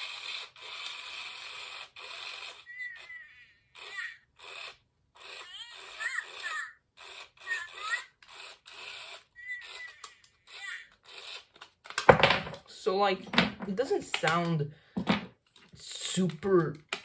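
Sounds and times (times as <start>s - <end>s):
toy high-pitched electronic babbling: 0.0s - 11.5s.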